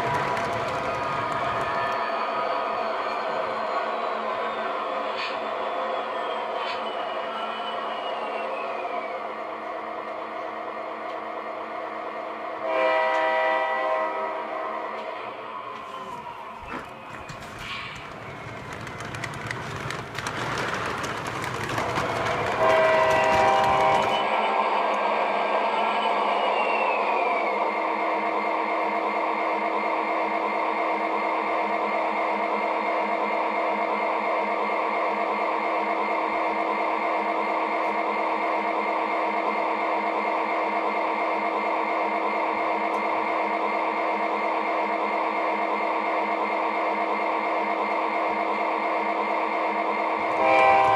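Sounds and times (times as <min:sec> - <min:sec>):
rail clicks: 0:00.0 - 0:02.1, 0:15.7 - 0:24.3, 0:50.2 - 0:50.9
locomotive horn chord: 0:12.6 - 0:14.8, 0:22.6 - 0:23.9, 0:50.2 - 0:50.9
model locomotive rumbling: 0:16.7 - 0:24.2.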